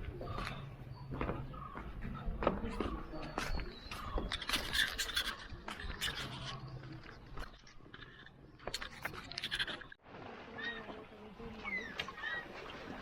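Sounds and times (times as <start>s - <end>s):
birds chattering calls: 0.0s - 10.0s.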